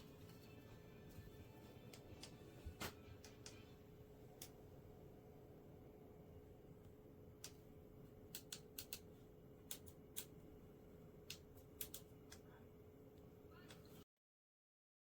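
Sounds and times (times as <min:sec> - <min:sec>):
faint steady hum: 0:00.0 - 0:14.0
light irregular clicks: 0:08.3 - 0:10.4, 0:11.2 - 0:12.6.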